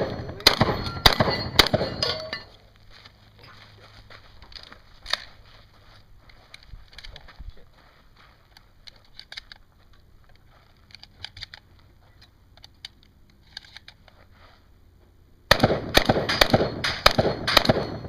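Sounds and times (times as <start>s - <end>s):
shotgun blasts: 0.0s - 2.0s, 15.5s - 18.0s.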